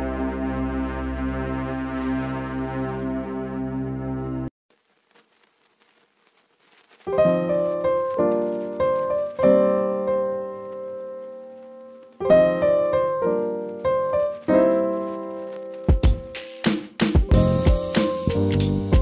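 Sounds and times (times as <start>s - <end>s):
piano chords ringing: 7.1s - 16.4s.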